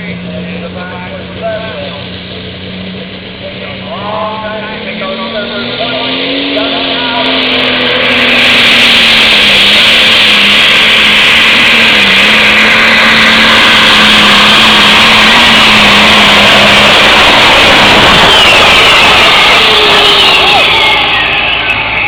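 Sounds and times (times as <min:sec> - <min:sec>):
garden tractor engine under load: 0:00.0 - 0:22.0.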